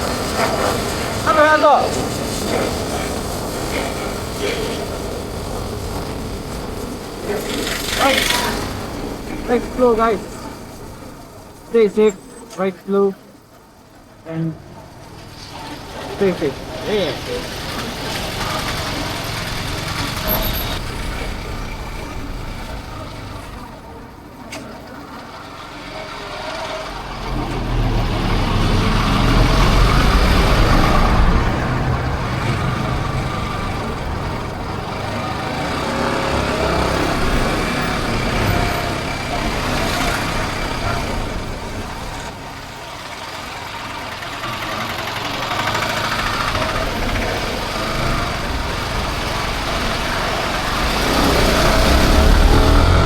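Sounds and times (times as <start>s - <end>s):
motorcycle engine running: 15.0s - 24.1s, 25.6s - 53.0s.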